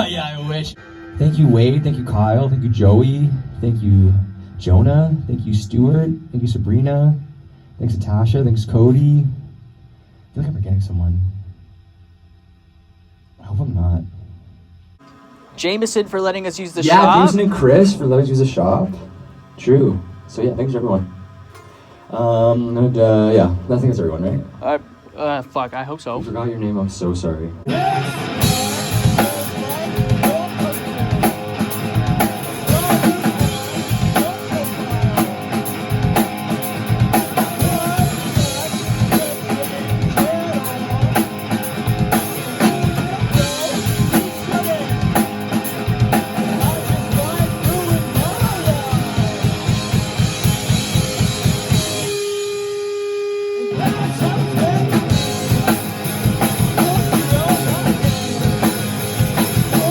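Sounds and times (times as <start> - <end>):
rock music with drums and guitar: 27.7 - 59.9.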